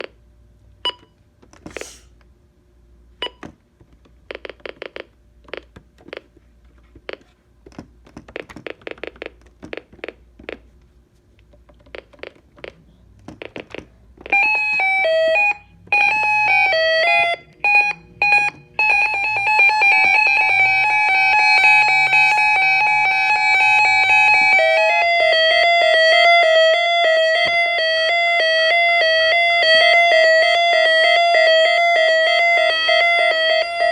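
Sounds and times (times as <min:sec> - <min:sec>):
electronic siren warning tone: 0:14.2 - 0:33.9.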